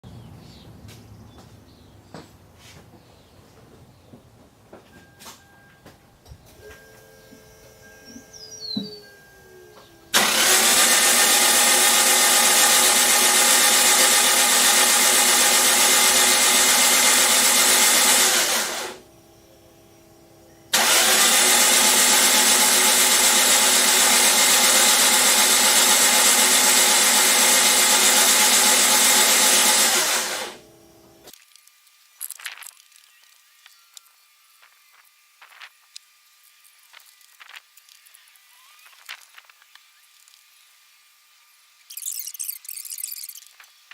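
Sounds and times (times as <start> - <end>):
car engine running: 9.7 - 19.1, 20.7 - 31.2.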